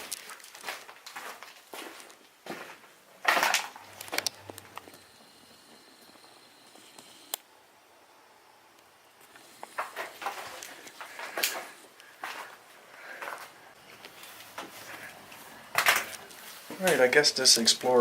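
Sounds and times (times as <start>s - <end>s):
footsteps on debris: 0.0s - 4.9s, 9.7s - 17.1s.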